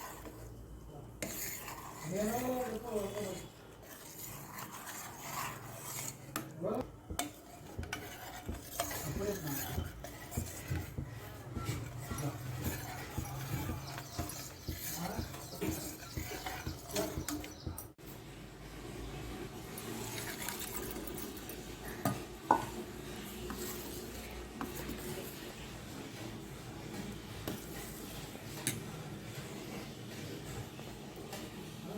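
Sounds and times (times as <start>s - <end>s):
metal spoon scraping a pot: 0.0s - 0.6s, 1.2s - 17.8s, 19.8s - 25.6s.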